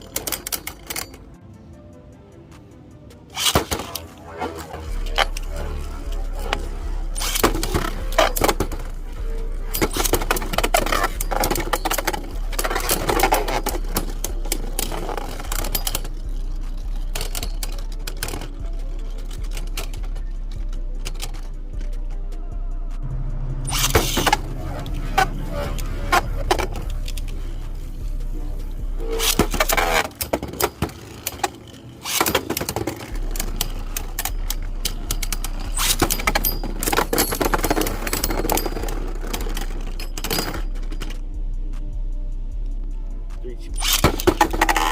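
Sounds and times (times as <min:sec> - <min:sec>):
spinning tops clashing and rattling: 0:23.7 - 0:27.4, 0:29.2 - 0:41.2, 0:43.8 - 0:44.9.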